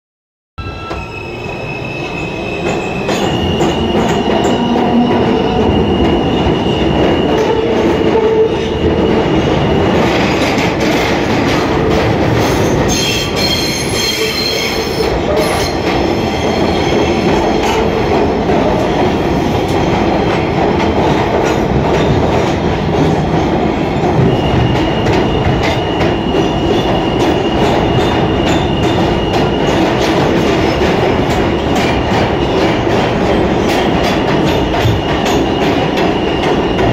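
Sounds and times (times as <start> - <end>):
high-pitched wheel squeal: 0.6 - 9.1, 12.9 - 17.8
train wheels on rail: 0.6 - 36.9.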